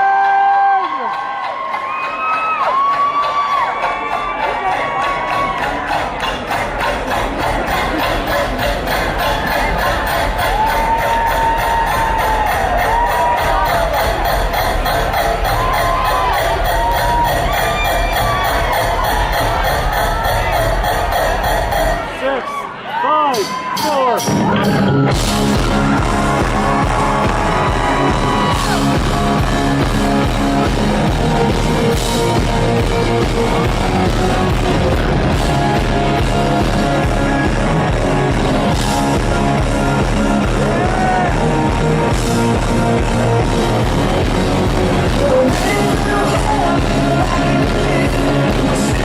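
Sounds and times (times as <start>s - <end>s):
rock band playing live: 1.4s - 22.7s, 23.4s - 49.0s
person singing: 5.9s - 12.5s, 44.8s - 49.0s.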